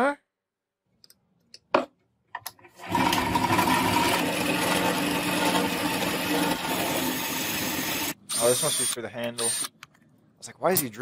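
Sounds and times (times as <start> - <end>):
electric drill boring through steel: 2.9 - 9.7.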